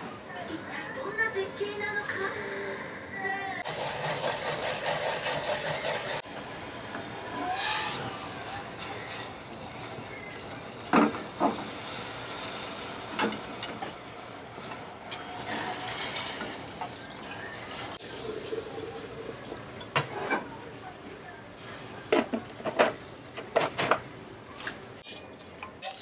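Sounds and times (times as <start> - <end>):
kitchen hiss: 3.6 - 23.2.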